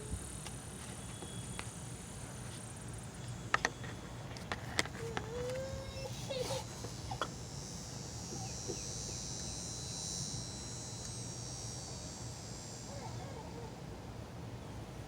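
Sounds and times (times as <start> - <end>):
steady low hum: 0.0 - 15.0
high insect buzzing: 5.0 - 13.0.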